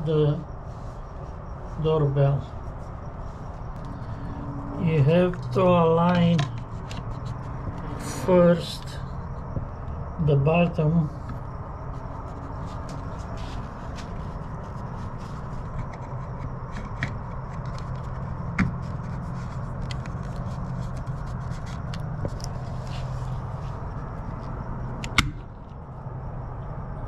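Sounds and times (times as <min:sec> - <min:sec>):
low background hum: 0:00.0 - 0:27.0.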